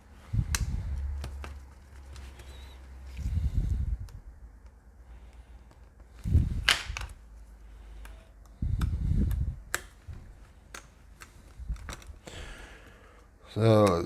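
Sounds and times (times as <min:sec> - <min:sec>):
clicks and taps of small parts: 0:04.0 - 0:12.3, 0:13.2 - 0:14.0.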